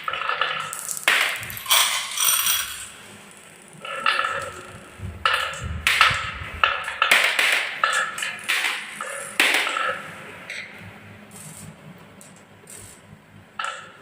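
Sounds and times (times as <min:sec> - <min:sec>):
marbles clicking on wooden run: 0:00.6 - 0:02.9
low rolling rumble: 0:04.3 - 0:07.1.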